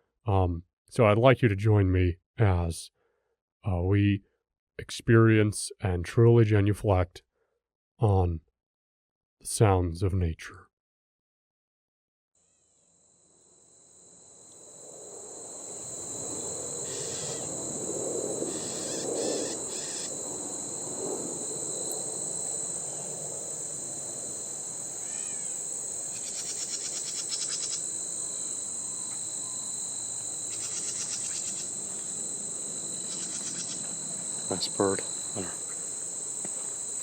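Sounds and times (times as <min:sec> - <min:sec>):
crickets and insects chirring: 0:12.4 - 0:37.0
bird chirps and trills: 0:18.5 - 0:20.2, 0:25.0 - 0:27.8, 0:30.5 - 0:31.7, 0:33.0 - 0:33.9.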